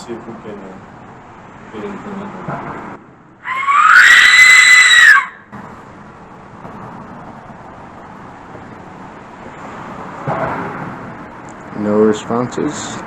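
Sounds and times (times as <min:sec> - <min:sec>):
death whistle shriek: 0:03.4 - 0:05.5.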